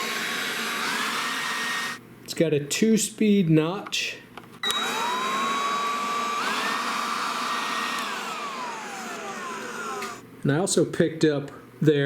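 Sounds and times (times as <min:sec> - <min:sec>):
leaf blower motor whine: 0:00.0 - 0:02.0, 0:04.6 - 0:10.2.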